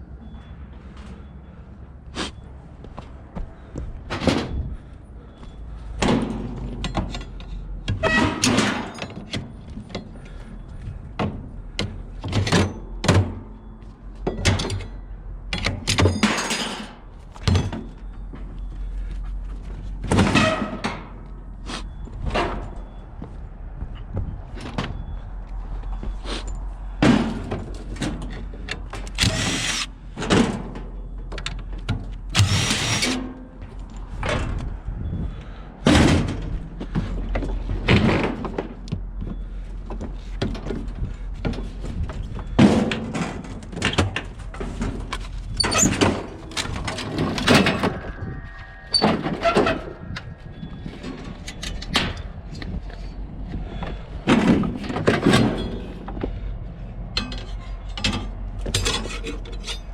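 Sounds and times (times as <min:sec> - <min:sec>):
scrap metal clanking and clattering: 0:06.0 - 0:10.4, 0:14.3 - 0:18.5, 0:20.0 - 0:21.2, 0:40.4 - 0:50.1, 0:53.7 - 0:56.5, 0:57.1 - 0:59.9.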